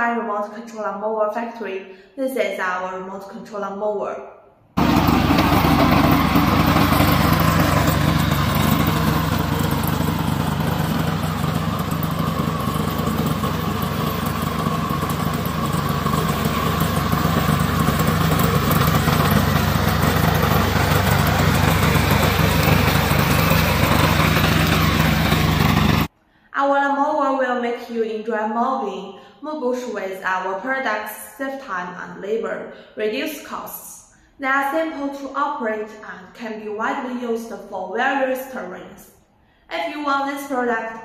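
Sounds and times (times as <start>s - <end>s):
lawn mower engine running: 4.8s - 26.1s.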